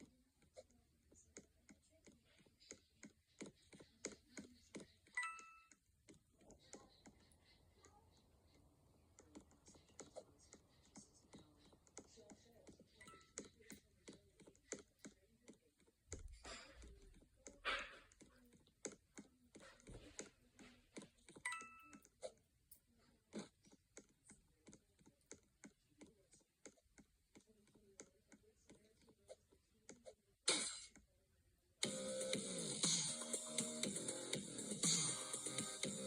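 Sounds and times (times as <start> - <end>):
music: 31.8 - 36.0.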